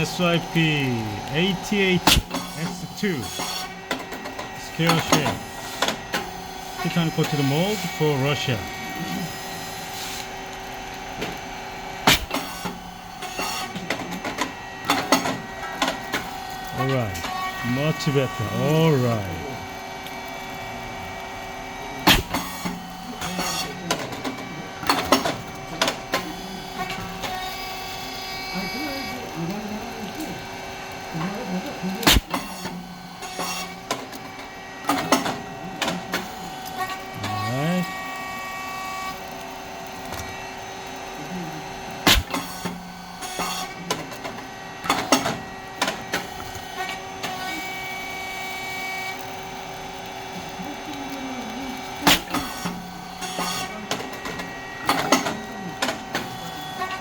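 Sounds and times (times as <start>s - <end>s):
machine motor hum: 0.0s - 57.0s
sharp pop: 2.1s - 2.5s, 32.1s - 32.4s, 42.1s - 42.5s.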